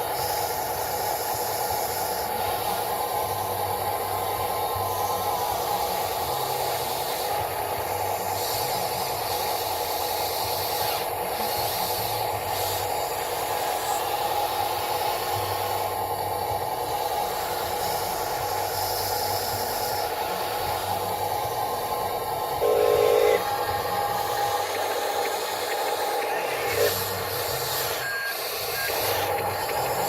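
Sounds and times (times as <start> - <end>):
electric motor whine: 0.0 - 30.0
low hum: 13.2 - 30.0.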